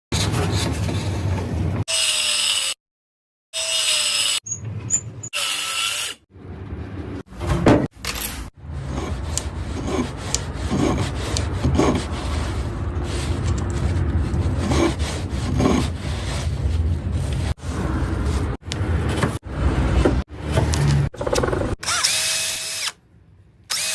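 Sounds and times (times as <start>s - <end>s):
hand tool scraping wood: 8.8s - 16.6s.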